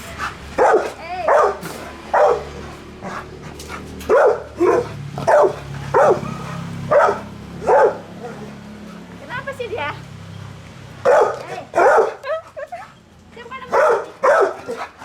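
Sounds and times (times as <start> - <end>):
dog barking: 0.2 - 8.6, 11.0 - 12.3, 13.6 - 15.0.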